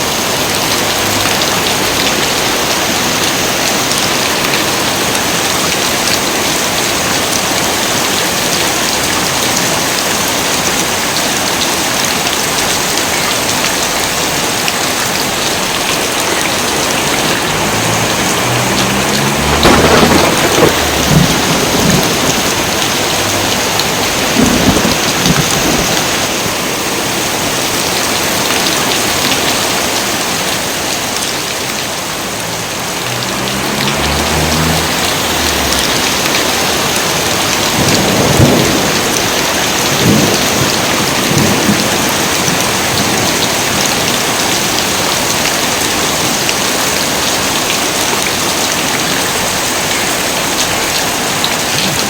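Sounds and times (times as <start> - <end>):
heavy rain falling: 0.0 - 52.0
thunder rolling: 16.5 - 26.3, 33.6 - 42.4.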